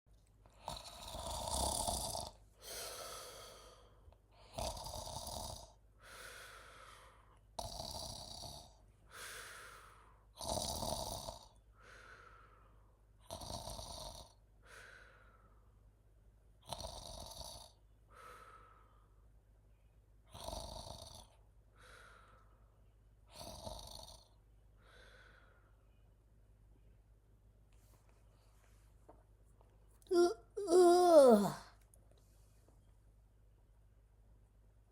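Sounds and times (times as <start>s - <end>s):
person snoring loudly: 0.6s - 3.6s, 4.4s - 6.2s, 7.6s - 9.3s, 10.4s - 11.6s, 13.3s - 14.4s, 16.6s - 17.8s, 20.3s - 21.4s, 23.3s - 24.4s, 30.1s - 31.7s.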